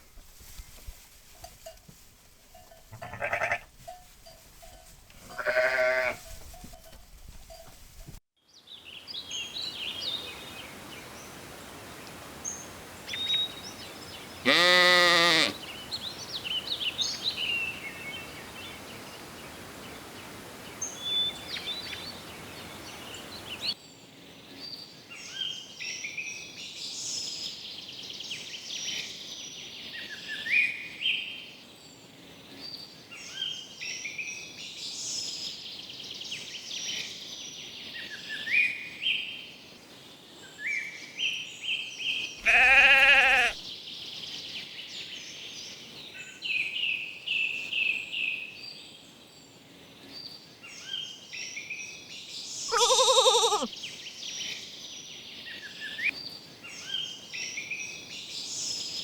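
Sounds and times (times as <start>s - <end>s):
lamb bleating: 2.9s - 3.7s, 5.3s - 6.2s, 14.4s - 15.6s, 42.4s - 43.6s, 52.7s - 53.7s
birdsong: 40.4s - 51.9s.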